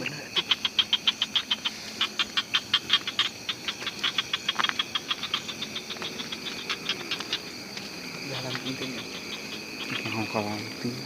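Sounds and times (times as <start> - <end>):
insect calling with dry ticks: 0.0 - 11.0.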